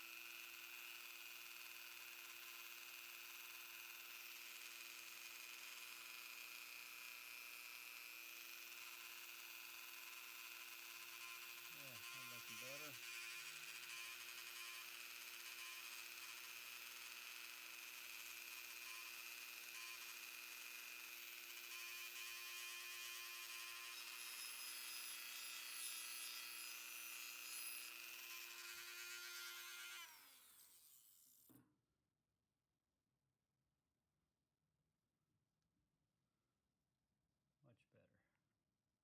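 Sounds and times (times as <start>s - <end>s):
rotary tool whining: 7.6s - 31.6s.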